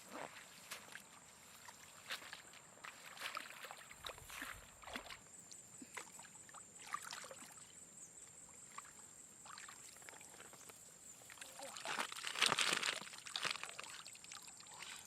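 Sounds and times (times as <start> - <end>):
water sloshing and splashing: 0.3 - 7.7, 8.5 - 15.0.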